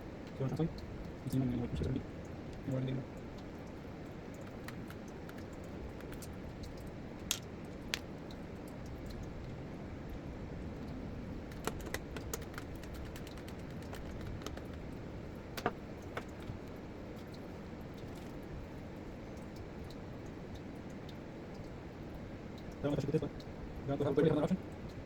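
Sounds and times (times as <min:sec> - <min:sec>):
plastic parts clicking: 0:04.4 - 0:06.3, 0:11.5 - 0:14.8, 0:15.6 - 0:16.7.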